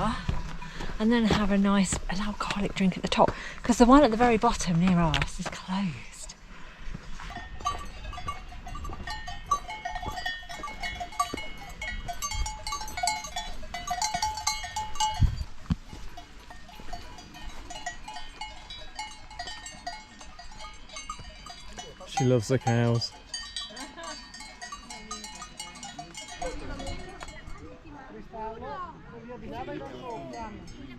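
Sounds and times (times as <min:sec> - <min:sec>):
cowbells clanking: 0:07.0 - 0:27.8, 0:29.8 - 0:30.9.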